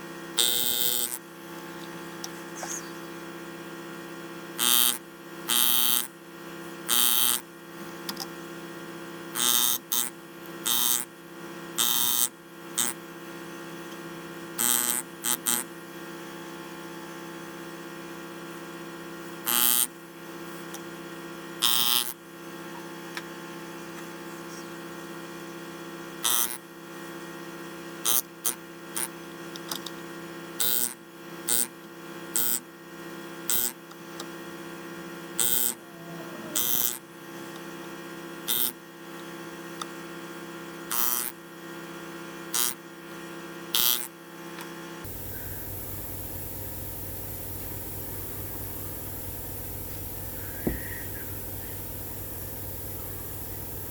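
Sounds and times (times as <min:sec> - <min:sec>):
machine buzzing hum: 0:00.3 - 0:06.2, 0:06.9 - 0:07.5, 0:09.3 - 0:11.1, 0:11.8 - 0:13.0, 0:14.5 - 0:15.8, 0:19.5 - 0:20.0, 0:45.0 - 0:53.9
short hissing bursts: 0:45.1 - 0:53.9.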